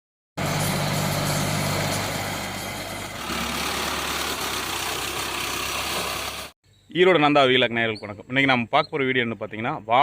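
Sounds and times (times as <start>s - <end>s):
tractor engine running: 0.4s - 6.6s.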